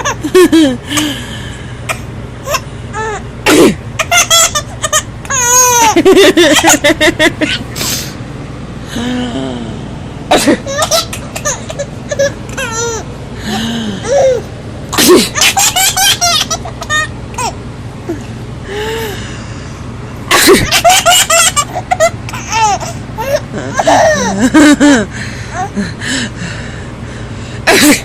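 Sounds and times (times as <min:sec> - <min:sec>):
person laughing: 0:00.0 - 0:01.2, 0:05.3 - 0:07.7, 0:10.3 - 0:11.6, 0:15.0 - 0:17.0, 0:20.3 - 0:22.2, 0:23.2 - 0:26.3, 0:27.7 - 0:28.0
person sneezing: 0:03.4 - 0:03.8, 0:14.9 - 0:15.6, 0:20.3 - 0:20.7, 0:27.7 - 0:28.0.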